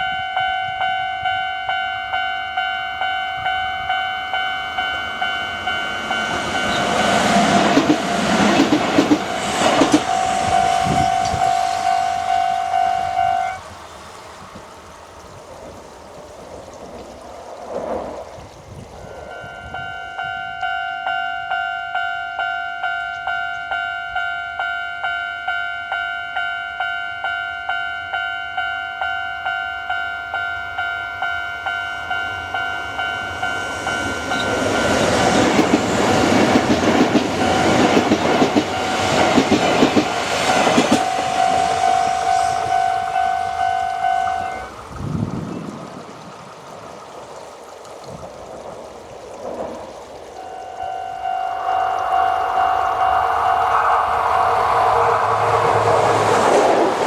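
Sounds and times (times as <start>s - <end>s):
level crossing warning bell: 0.0s - 13.6s, 19.0s - 44.8s, 50.4s - 55.6s
train passing over crossing: 0.0s - 57.0s.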